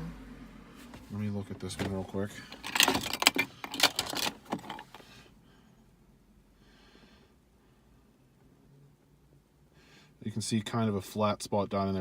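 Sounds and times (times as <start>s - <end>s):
shift knob parts clicking: 1.7s - 5.0s
faint breath through nose: 6.6s - 7.8s.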